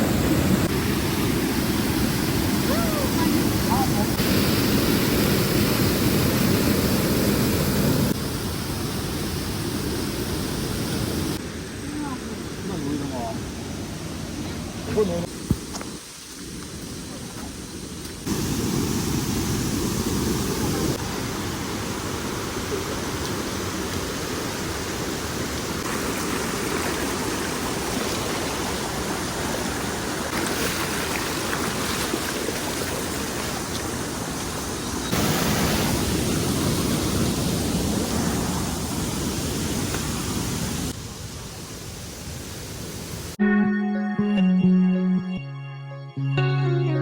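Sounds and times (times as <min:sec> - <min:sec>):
waterfall rushing: 0:00.0 - 0:11.6, 0:18.3 - 0:41.0.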